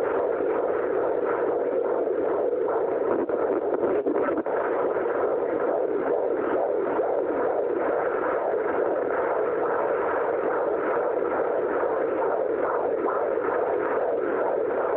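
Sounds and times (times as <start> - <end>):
fetal heartbeat whooshing pulse: 0.0 - 14.9.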